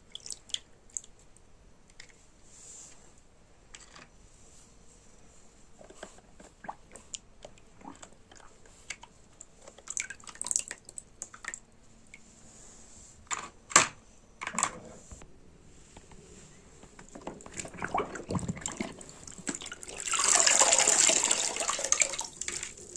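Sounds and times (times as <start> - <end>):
water splashing and dripping: 17.5 - 22.9.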